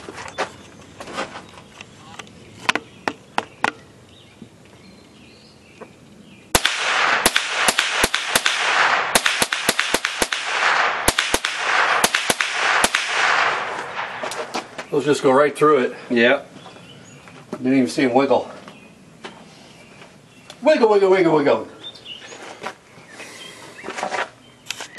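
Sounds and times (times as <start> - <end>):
rifle shots cracking: 6.5 - 14.7.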